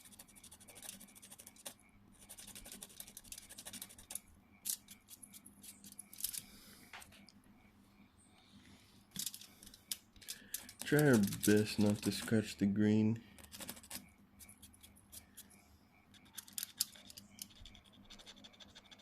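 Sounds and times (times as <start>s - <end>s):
small tool scraping circuit board: 0.0s - 5.9s, 10.6s - 12.5s, 13.4s - 19.0s.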